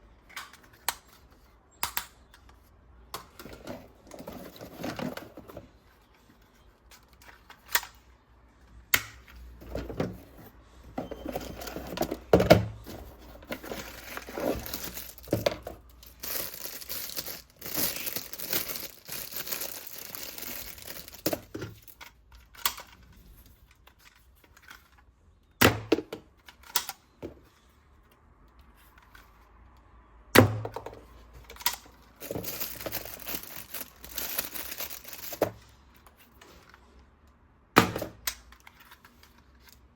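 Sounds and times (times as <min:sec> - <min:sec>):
plastic and cardboard crinkling: 0:03.4 - 0:07.7, 0:09.6 - 0:24.9, 0:31.4 - 0:36.9.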